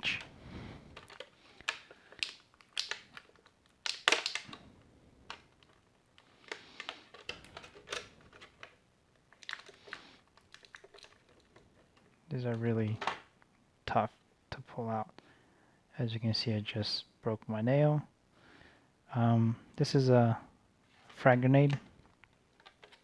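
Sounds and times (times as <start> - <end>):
plastic pieces clicking and snapping: 0.9 - 13.3, 22.1 - 23.0.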